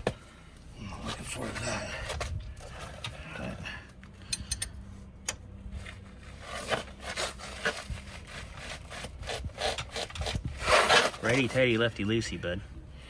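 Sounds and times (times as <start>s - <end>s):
steady low hum: 0.0s - 13.0s
scraping and rubbing: 5.8s - 11.9s.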